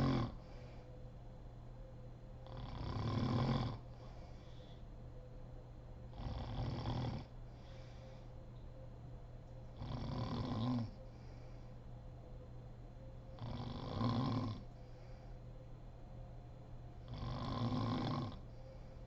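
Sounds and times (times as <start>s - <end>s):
woman snoring: 0.0s - 0.4s, 2.5s - 3.9s, 6.2s - 7.3s, 9.8s - 11.0s, 13.4s - 14.7s, 17.1s - 18.4s
quiet breathing: 0.0s - 1.3s, 1.9s - 8.9s, 9.6s - 19.0s.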